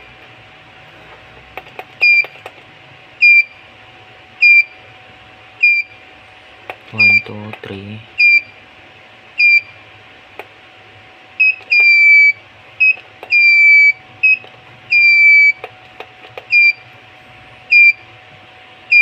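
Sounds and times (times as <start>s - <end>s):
morse code buzzer beeps: 2.0s - 2.3s, 3.2s - 3.6s, 4.4s - 4.8s, 5.6s - 6.0s, 7.0s - 7.4s, 8.2s - 8.6s, 9.4s - 9.8s, 11.4s - 15.7s, 16.5s - 16.9s, 17.7s - 18.1s.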